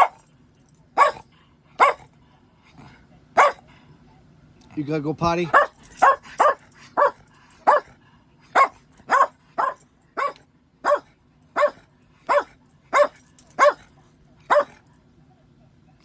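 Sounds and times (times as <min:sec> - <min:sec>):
dog barking: 0:00.0 - 0:00.2, 0:01.0 - 0:02.1, 0:03.4 - 0:03.7, 0:05.5 - 0:13.9, 0:14.5 - 0:14.8.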